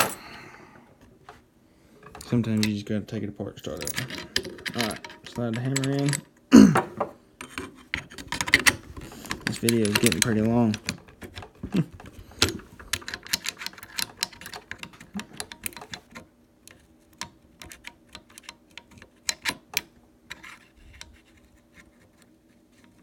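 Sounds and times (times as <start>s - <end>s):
metallic clicks of rifle parts: 3.7s - 6.4s, 7.4s - 11.5s.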